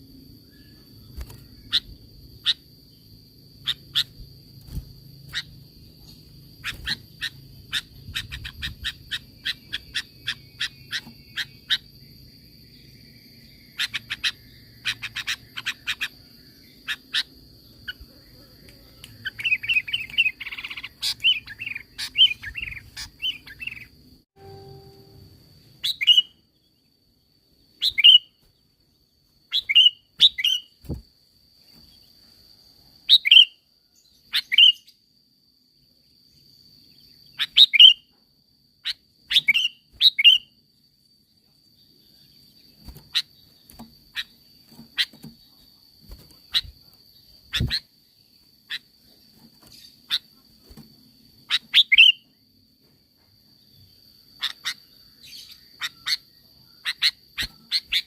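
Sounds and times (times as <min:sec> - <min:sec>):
bird sharp calls: 0:05.2 - 0:11.9, 0:13.6 - 0:16.2
faint high tone: 0:24.4 - 0:25.5.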